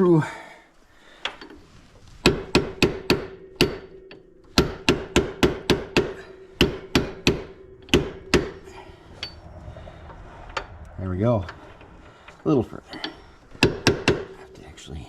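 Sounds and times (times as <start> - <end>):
hammer striking metal pin: 2.2 - 8.7
metal ringing: 2.3 - 15.0.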